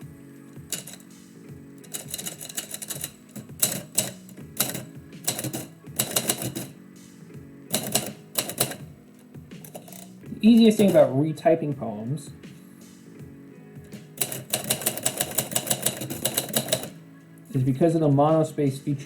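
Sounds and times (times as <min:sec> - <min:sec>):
quiet instrumental music: 0:00.0 - 0:19.0
typewriter keys clicking: 0:00.6 - 0:01.1, 0:01.8 - 0:06.8, 0:07.7 - 0:08.9, 0:09.6 - 0:11.1, 0:13.9 - 0:17.0.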